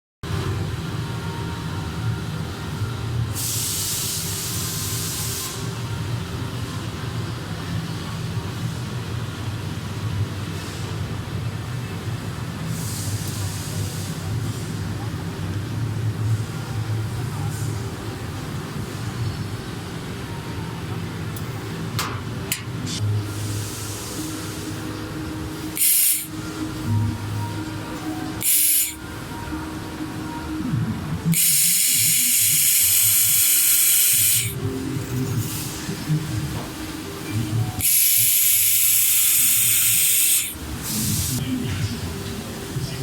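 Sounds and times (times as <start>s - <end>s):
laser welding machine hum: 0.3s - 43.0s
welder gas hiss: 3.4s - 5.6s, 25.6s - 26.4s, 28.4s - 29.0s, 31.3s - 34.6s, 37.8s - 41.4s.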